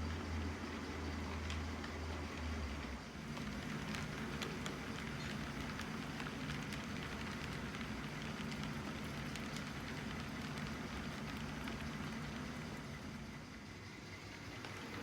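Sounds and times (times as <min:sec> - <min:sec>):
model train motor hum: 0:00.0 - 0:15.0.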